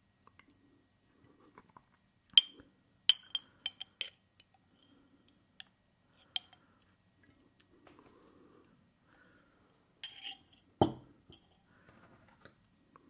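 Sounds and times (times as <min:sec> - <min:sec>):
cutlery tapping glassware: 0:02.4 - 0:04.2, 0:10.0 - 0:11.5.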